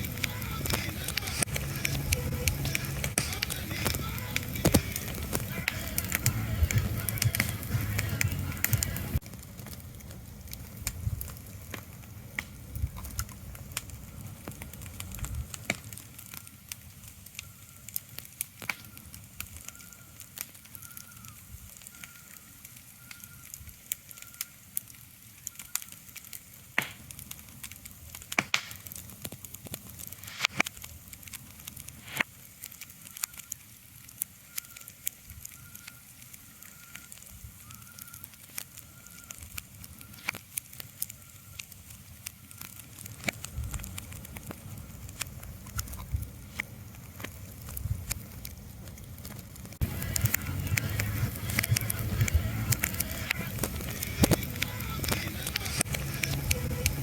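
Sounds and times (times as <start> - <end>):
fire crackling and popping: 0.0 - 57.0
low rumble: 49.8 - 57.0.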